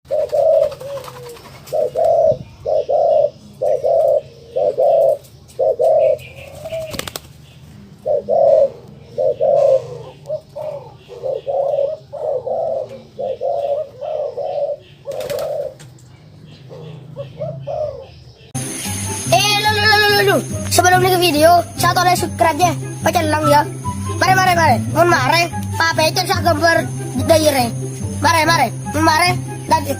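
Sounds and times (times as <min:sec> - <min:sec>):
dove cooing: 0:00.1 - 0:07.3, 0:08.0 - 0:18.4.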